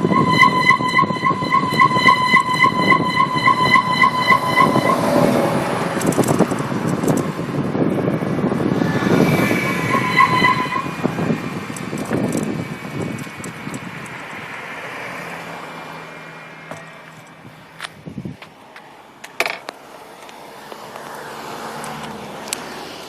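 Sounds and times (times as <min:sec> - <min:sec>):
pulsing disc brake squeal: 0:00.0 - 0:06.5, 0:08.8 - 0:12.5
rolling road noise: 0:00.0 - 0:23.0.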